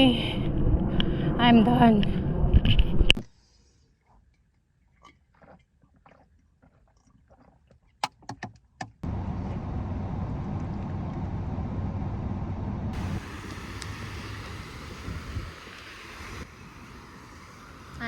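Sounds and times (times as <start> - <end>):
low rumbling noise: 0.0 - 3.2, 9.0 - 18.0
sharp clicks and knocks: 8.0 - 9.0.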